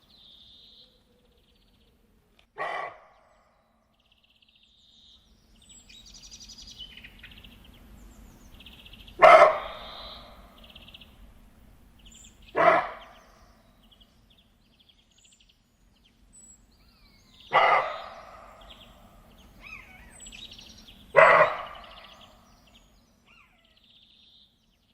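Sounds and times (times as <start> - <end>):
birds chirping softly: 0.0 - 24.9
deer barking: 2.6 - 3.2, 9.2 - 10.4, 12.5 - 13.2, 17.5 - 18.8, 21.2 - 22.3.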